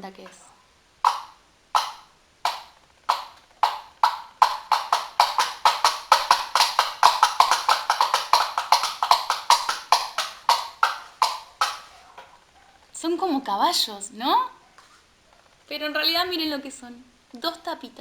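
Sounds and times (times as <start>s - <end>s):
caps knocking like hooves: 0.0s - 12.5s.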